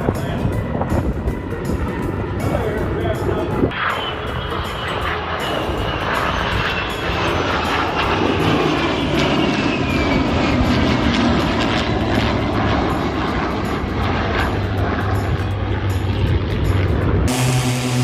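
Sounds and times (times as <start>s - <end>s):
fighter jet engines roaring: 0.0s - 18.0s.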